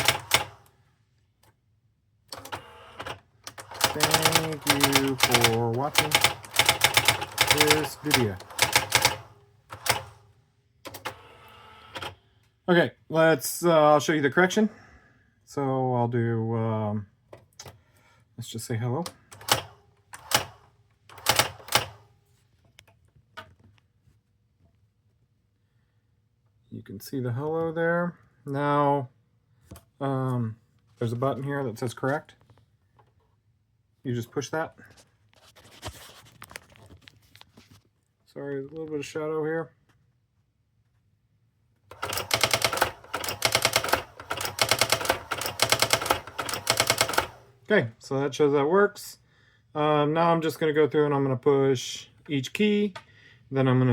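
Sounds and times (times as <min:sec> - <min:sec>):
typewriter print strikes: 0:00.0 - 0:00.6, 0:02.4 - 0:10.2, 0:19.4 - 0:22.0, 0:41.9 - 0:47.5.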